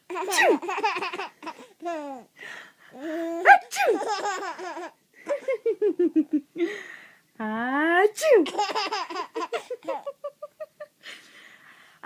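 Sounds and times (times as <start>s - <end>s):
baby laughing: 0.1s - 2.3s, 3.0s - 5.6s, 8.5s - 10.4s
woman mock sneezing: 0.3s - 0.6s, 3.4s - 4.1s, 8.2s - 8.5s.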